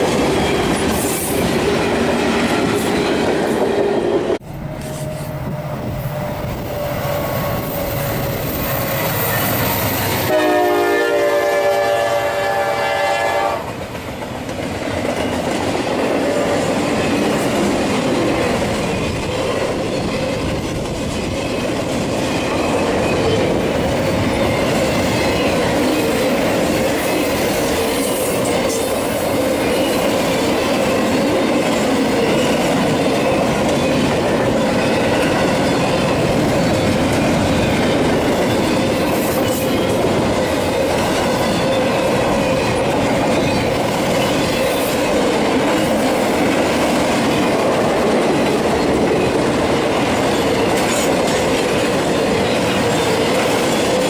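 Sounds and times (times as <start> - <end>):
passing train rumble and clatter: 0.0 - 54.0
locomotive air horn blast: 10.2 - 13.7.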